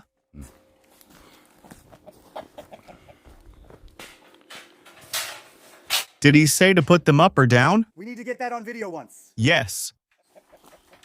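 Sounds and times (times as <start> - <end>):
rooster clucking: 1.9 - 3.3, 10.2 - 11.0.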